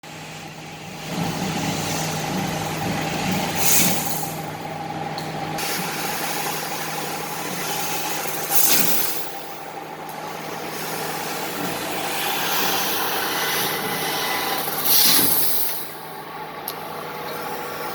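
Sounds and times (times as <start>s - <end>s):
laser cutter humming: 0.1s - 17.9s
hiss blasts: 14.5s - 16.0s.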